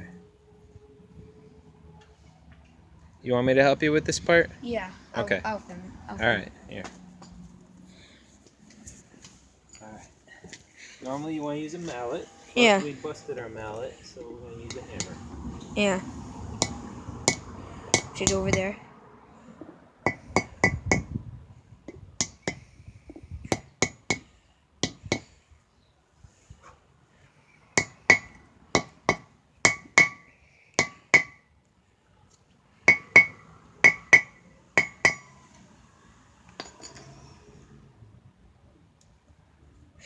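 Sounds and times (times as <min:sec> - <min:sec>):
hammer striking metal: 0:14.6 - 0:15.2, 0:16.6 - 0:18.8, 0:20.0 - 0:21.1, 0:27.8 - 0:31.4, 0:32.9 - 0:35.4.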